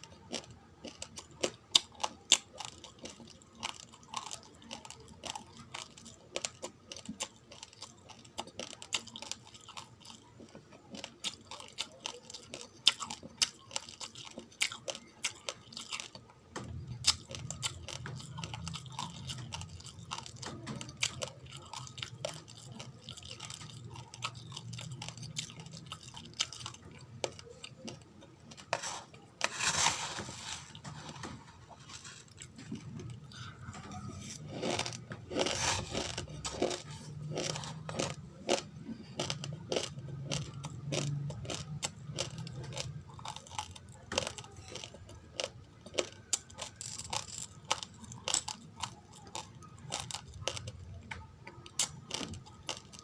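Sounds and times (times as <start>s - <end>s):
raw rice crunching: 28.6s - 32.6s, 34.4s - 38.6s.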